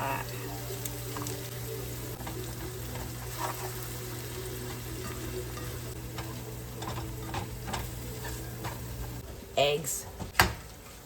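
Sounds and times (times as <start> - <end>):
food sizzling in a frying pan: 0.0 - 9.7.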